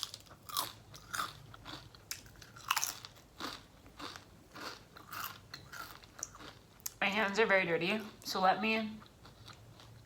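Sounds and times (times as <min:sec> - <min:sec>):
person chewing crunchy food: 0:00.0 - 0:07.0, 0:09.0 - 0:10.0.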